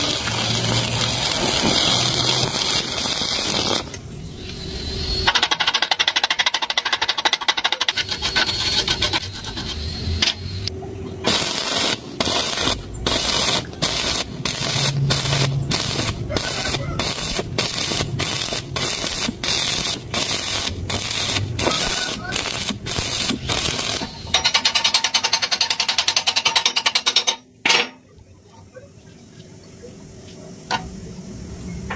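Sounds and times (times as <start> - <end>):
welding arc crackling and hissing: 0.0 - 7.0, 7.7 - 25.9.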